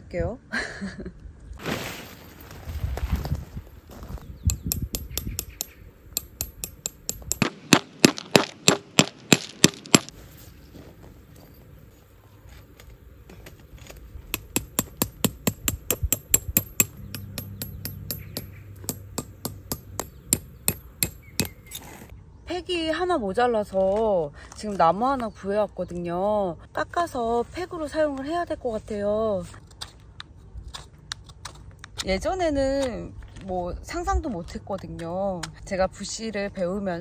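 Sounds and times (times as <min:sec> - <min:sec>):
hammering tent pegs: 0:14.3 - 0:21.8.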